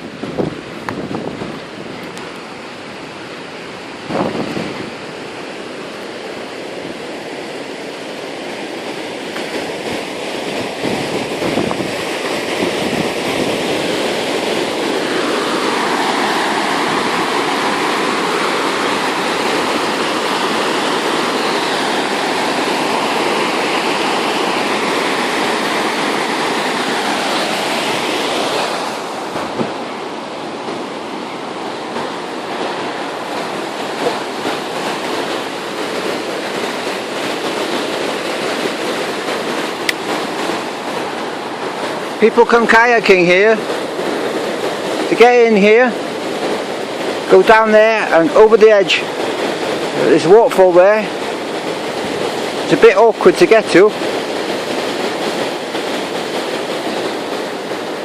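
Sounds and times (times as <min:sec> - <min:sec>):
wind on microphone: 0:00.0 - 0:05.6, 0:09.2 - 0:48.1
rushing river water: 0:00.0 - 0:58.0.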